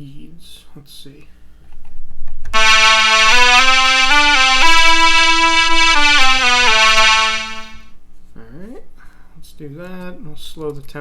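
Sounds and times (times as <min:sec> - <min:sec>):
synth lead melody: 0:02.6 - 0:07.8.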